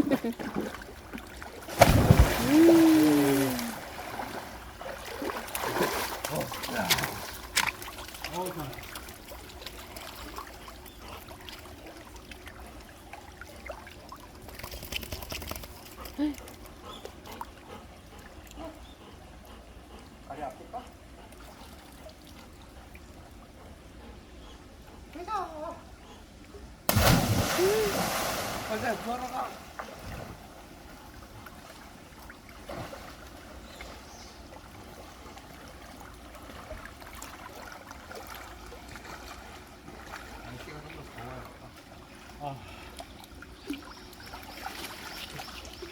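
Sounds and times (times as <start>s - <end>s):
mountain stream flowing: 0.0s - 10.5s, 26.9s - 31.1s
stream water flowing: 0.0s - 15.9s, 26.4s - 45.9s
small water splashes: 0.0s - 16.5s, 26.9s - 34.0s, 34.6s - 45.9s.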